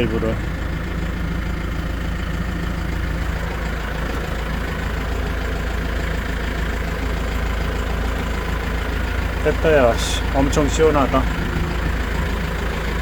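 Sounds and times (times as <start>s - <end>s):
tractor engine idling: 0.0s - 13.0s.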